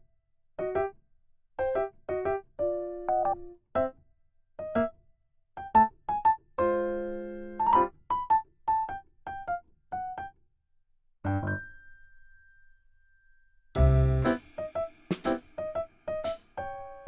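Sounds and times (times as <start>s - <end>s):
playful electric piano tune: 0.6s - 0.9s, 1.6s - 3.9s, 4.6s - 5.0s, 5.6s - 10.3s, 11.3s - 11.9s, 13.8s - 17.0s.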